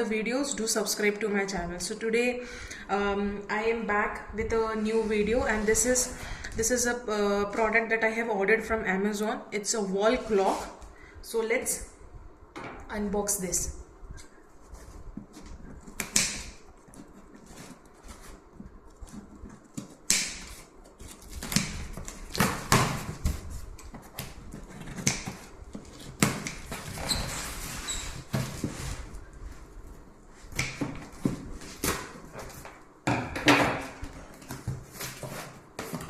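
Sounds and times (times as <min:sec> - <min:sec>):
cardboard parcel rustling and tearing: 0:14.6 - 0:29.2.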